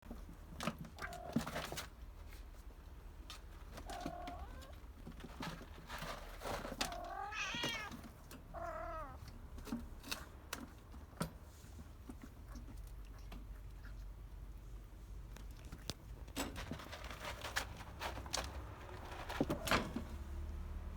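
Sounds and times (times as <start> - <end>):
kitten mewing: 3.8 - 4.8, 6.8 - 9.4
light taps and rustles: 9.2 - 14.0, 14.7 - 20.5.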